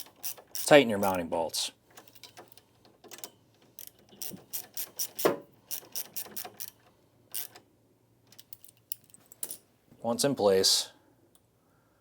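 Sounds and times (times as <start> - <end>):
ratchet wrench clicking: 0.0 - 0.7, 3.8 - 7.6.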